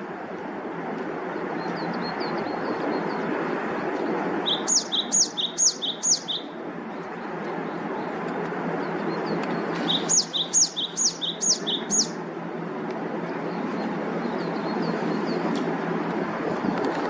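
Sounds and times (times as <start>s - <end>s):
bird calling sharp high notes: 4.5s - 6.4s, 9.8s - 12.2s.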